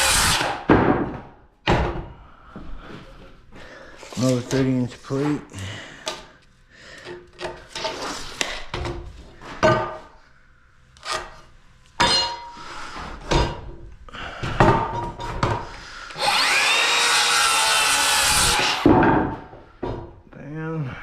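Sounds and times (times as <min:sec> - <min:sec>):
power saw cutting wood: 0:00.0 - 0:00.7, 0:16.1 - 0:18.9.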